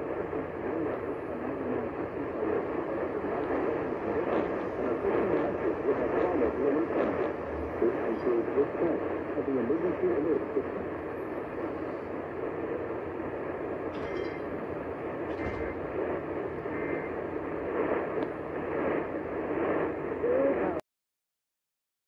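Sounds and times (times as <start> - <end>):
radio static hiss: 0.0 - 20.8
data burst tones: 13.4 - 20.8.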